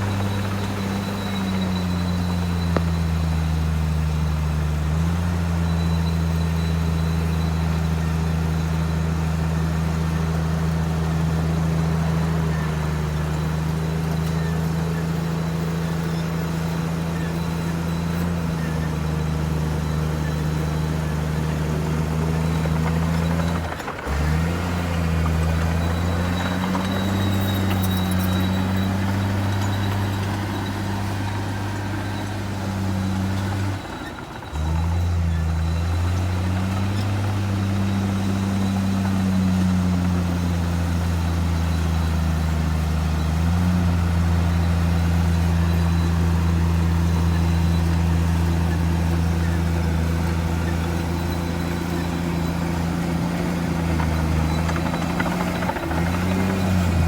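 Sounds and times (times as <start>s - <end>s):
bulldozer diesel engine under load: 0.0s - 57.0s.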